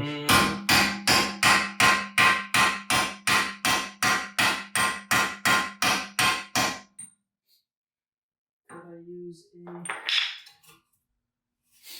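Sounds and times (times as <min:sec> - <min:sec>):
hammer pounding on metal: 0:00.3 - 0:06.9.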